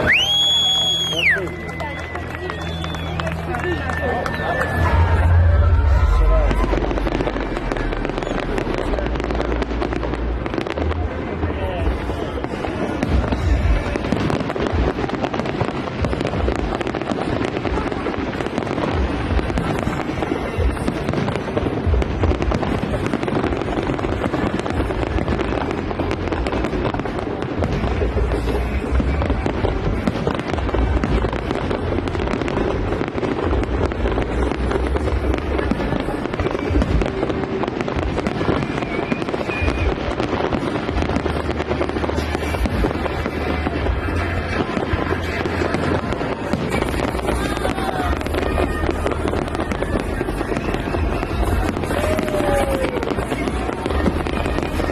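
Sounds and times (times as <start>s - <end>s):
fireworks shells bursting: 12.0s - 54.9s.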